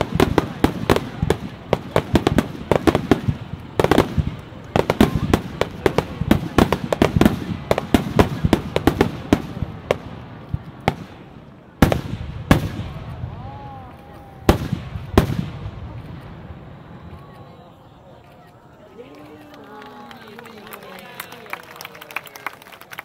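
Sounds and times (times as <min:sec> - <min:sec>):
fireworks bangs and crackles: 0:00.0 - 0:17.6.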